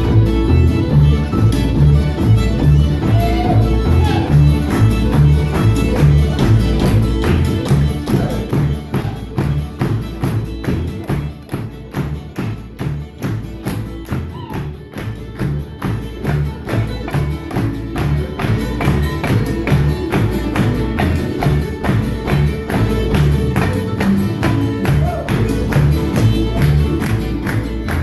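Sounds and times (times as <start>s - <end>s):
string band music: 0.0s - 28.0s.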